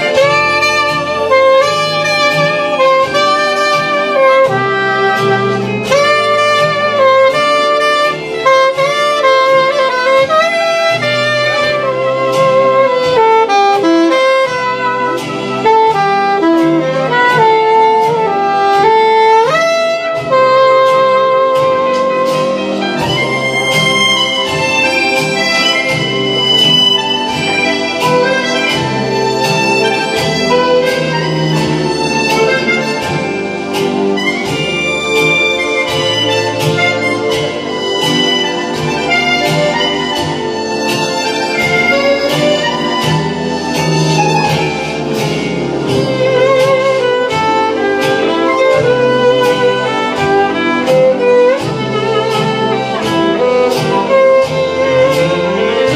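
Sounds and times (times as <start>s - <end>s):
moving bass line: 0.0s - 55.9s
steady beat: 0.0s - 55.9s
wind instrument melody: 0.0s - 55.9s.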